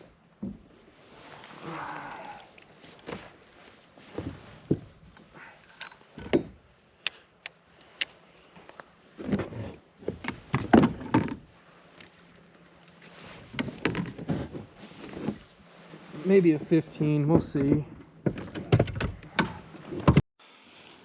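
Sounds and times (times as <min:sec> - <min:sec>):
thumps and clatter: 0:17.3 - 0:20.2.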